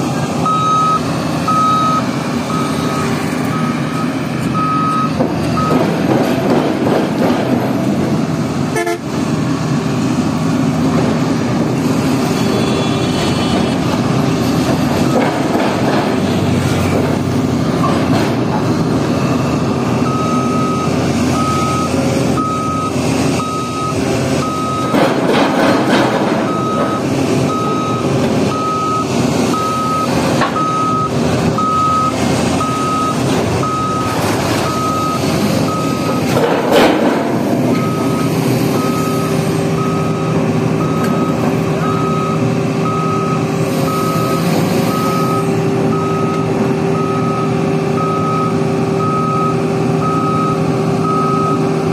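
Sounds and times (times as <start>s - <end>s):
reversing alarm beeping: 0.4s - 6.0s, 20.0s - 36.3s, 37.7s - 51.7s
machinery clanks: 24.7s - 27.2s, 35.5s - 38.0s.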